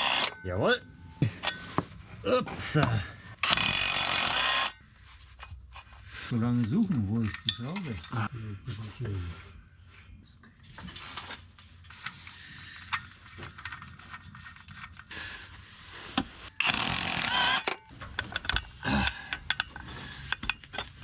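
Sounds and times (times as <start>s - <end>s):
metallic clicks and knocks of tools: 17.6s - 21.0s.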